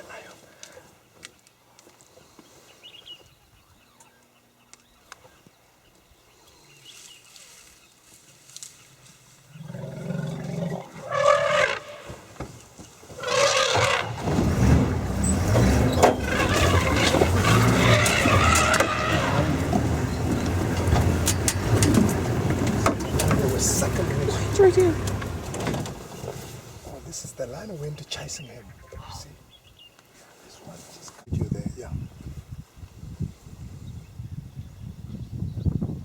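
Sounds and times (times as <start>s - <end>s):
vehicle engine running: 13.2s - 27.4s.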